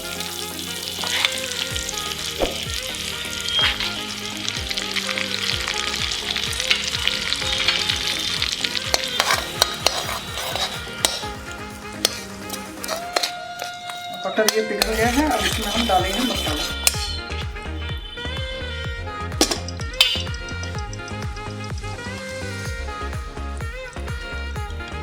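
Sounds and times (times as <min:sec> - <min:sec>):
butter sizzling in a pan: 0:00.0 - 0:14.2, 0:14.8 - 0:25.0
spoon scraping a pan: 0:00.1 - 0:04.1, 0:05.1 - 0:17.2.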